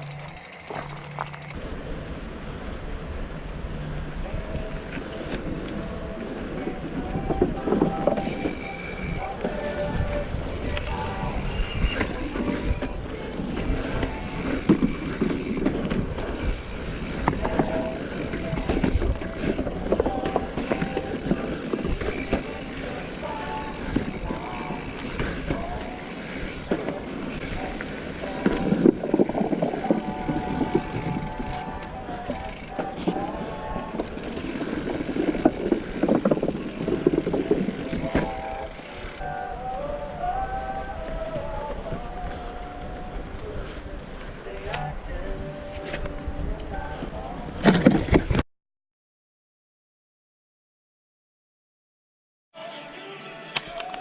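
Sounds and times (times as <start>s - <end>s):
bike knocking and rattling: 0.0s - 1.6s, 7.2s - 39.2s
bike tyres rolling over dirt: 0.0s - 48.3s
wind rumble: 1.3s - 48.4s.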